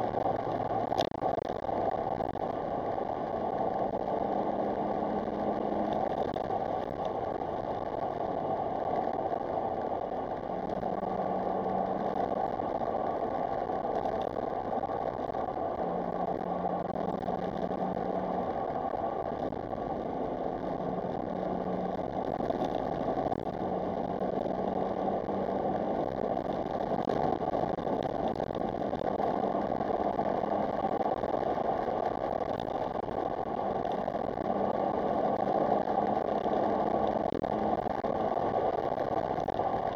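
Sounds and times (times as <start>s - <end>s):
car engine and road noise: 0.0s - 39.9s.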